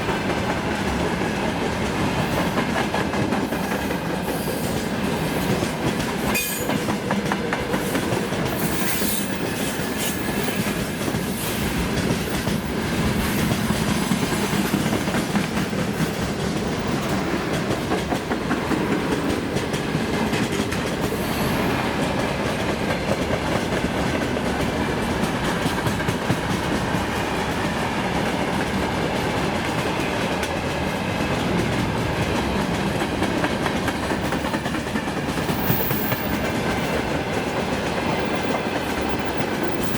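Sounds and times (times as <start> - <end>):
freight train wheels clattering: 0.0 - 39.9.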